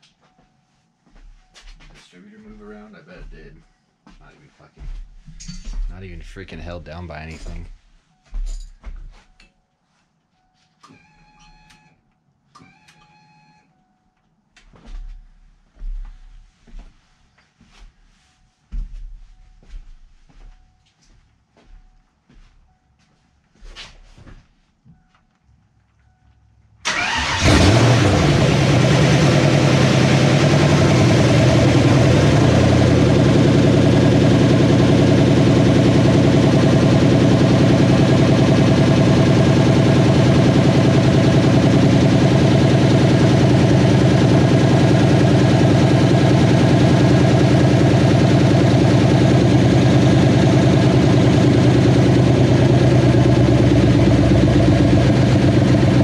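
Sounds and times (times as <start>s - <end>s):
car engine starting and idling: 26.8s - 56.0s.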